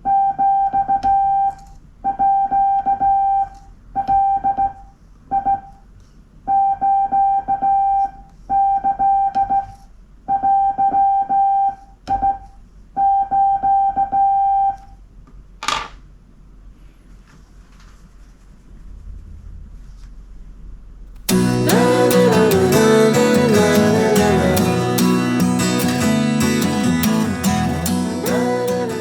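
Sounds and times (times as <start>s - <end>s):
morse code beeps: 0.1s - 5.7s, 6.5s - 9.7s, 10.3s - 14.9s.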